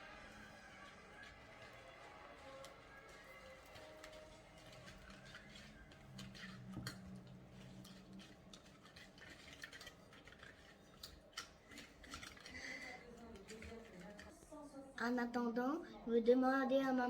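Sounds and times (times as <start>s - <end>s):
utensil stirring in a mixing bowl: 0.0s - 15.2s.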